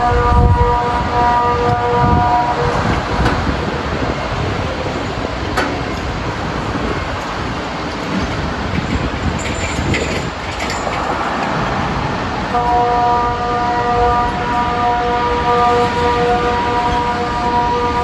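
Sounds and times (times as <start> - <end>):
siren steady tone: 0.0 - 2.9
steady rushing noise: 0.0 - 18.0.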